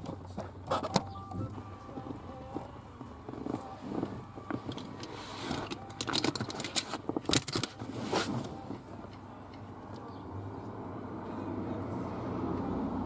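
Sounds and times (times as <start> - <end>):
hands rustling behind dashboard: 0.0 - 10.2.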